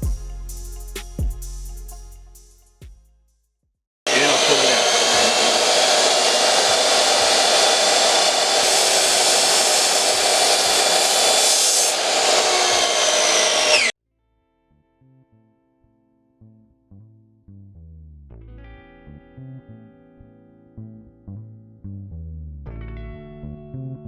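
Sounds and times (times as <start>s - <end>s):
power tool motor whining: 4.1s - 13.9s.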